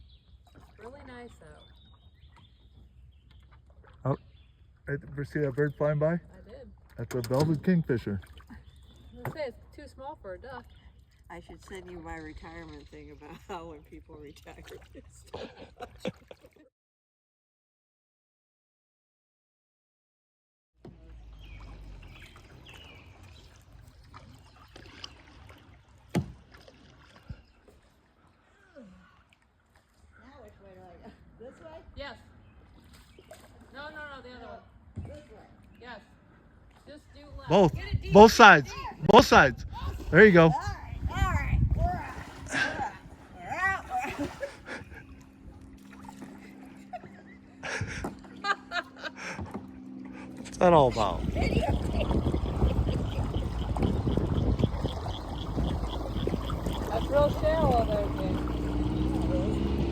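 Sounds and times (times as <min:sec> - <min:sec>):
paddle splashing in water: 0:00.0 - 0:05.7, 0:06.6 - 0:12.9, 0:14.3 - 0:16.7, 0:20.8 - 0:30.8, 0:31.9 - 0:37.2, 0:38.2 - 0:59.9
water splashing off paddle: 0:20.9 - 0:28.4, 0:41.8 - 0:47.0, 0:49.2 - 0:59.9
steady low hum: 0:40.7 - 0:59.9.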